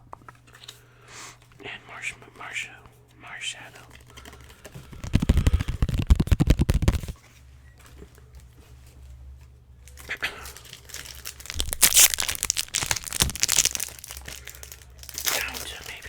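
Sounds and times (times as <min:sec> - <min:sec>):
trading cards being handled: 0:03.8 - 0:07.2, 0:09.9 - 0:16.0
foil wrapper crinkling: 0:03.9 - 0:07.2, 0:09.8 - 0:16.0.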